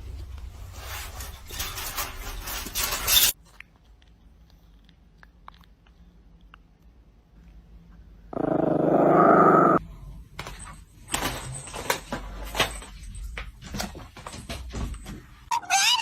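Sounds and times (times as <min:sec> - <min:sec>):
pet animal growling: 0:08.3 - 0:09.8.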